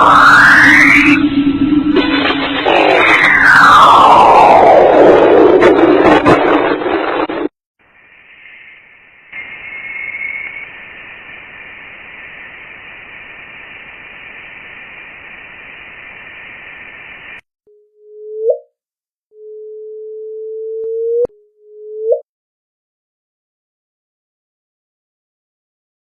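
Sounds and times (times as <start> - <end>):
electronic hiss like static: 7.8 - 17.4.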